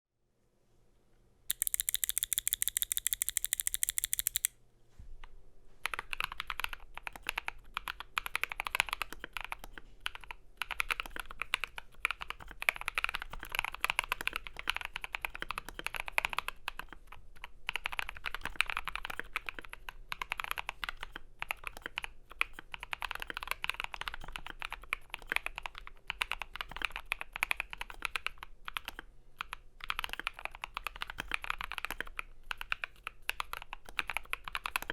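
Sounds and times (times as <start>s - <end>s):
fast run of clicks: 1.5s - 4.5s
mechanical keyboard typing: 1.5s - 4.5s, 5.9s - 16.4s, 21.8s - 34.9s.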